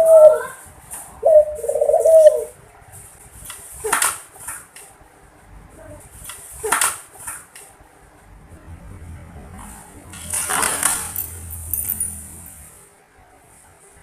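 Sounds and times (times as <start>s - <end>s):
dove cooing: 0.0s - 0.6s, 1.2s - 2.6s.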